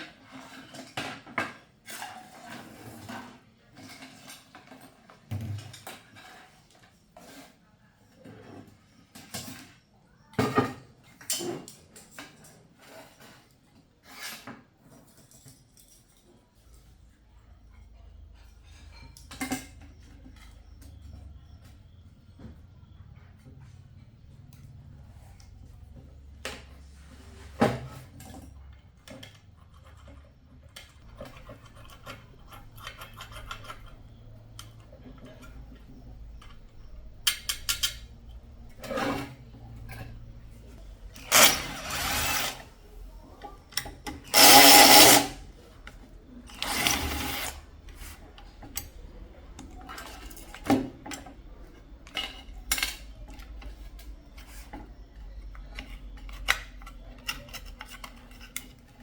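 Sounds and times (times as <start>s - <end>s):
tools clicking and knocking: 28.2s - 38.8s, 43.4s - 47.6s, 49.6s - 59.0s.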